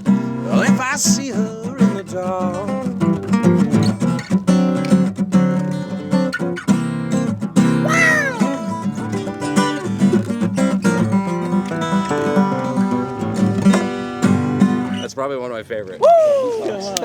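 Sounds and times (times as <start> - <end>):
acoustic guitar playing: 0.0 - 15.1
short high cry: 7.8 - 8.7, 16.0 - 16.6.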